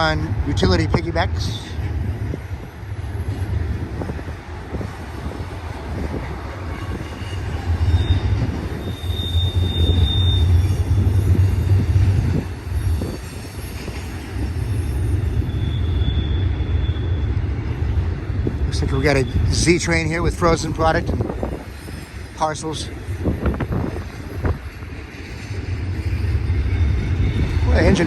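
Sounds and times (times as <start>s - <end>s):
freight train wheels rumbling: 0.0s - 28.0s
high wheel squeal: 6.6s - 17.6s.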